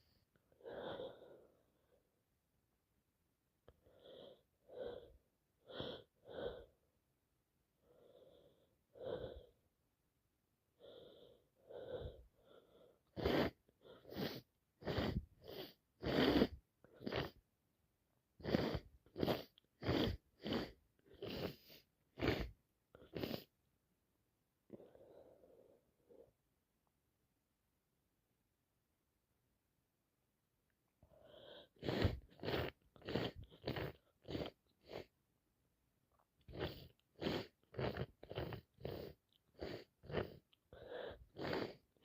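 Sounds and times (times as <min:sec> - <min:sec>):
soft breathy sounds: 0:00.0 - 0:02.2, 0:03.6 - 0:07.0, 0:07.8 - 0:09.7, 0:10.7 - 0:17.5, 0:18.4 - 0:23.6, 0:24.6 - 0:26.4, 0:31.0 - 0:35.2, 0:36.1 - 0:42.0.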